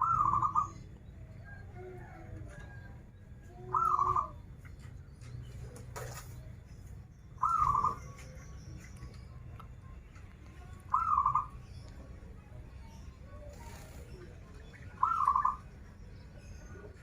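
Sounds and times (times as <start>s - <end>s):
dove cooing: 0.0s - 4.4s, 7.4s - 8.1s, 10.9s - 11.6s, 13.4s - 15.7s.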